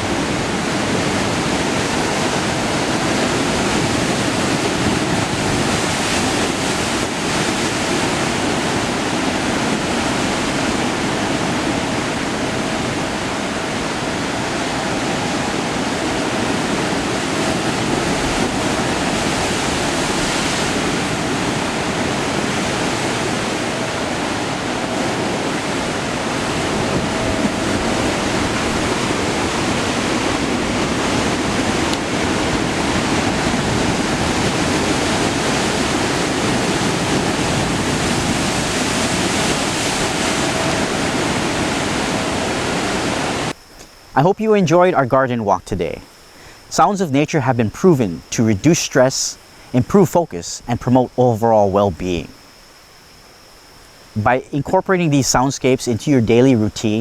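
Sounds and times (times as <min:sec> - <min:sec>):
rushing water: 0:00.0 - 0:57.0.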